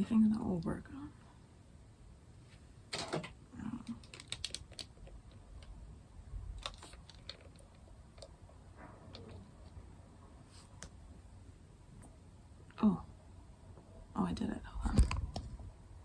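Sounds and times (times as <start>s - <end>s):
clicks of small plastic items: 3.0s - 5.7s, 6.6s - 8.4s.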